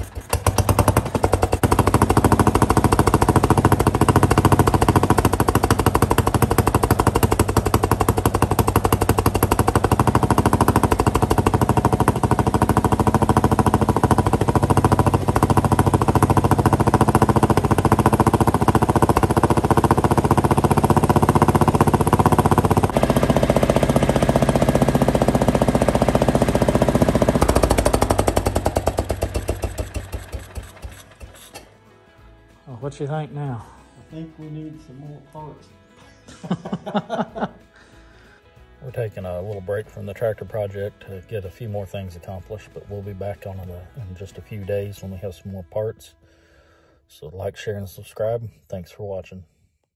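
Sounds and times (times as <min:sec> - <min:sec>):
engine running down to a stop: 0:00.0 - 0:31.8
garden tractor engine running: 0:00.0 - 0:34.7, 0:37.8 - 0:45.9.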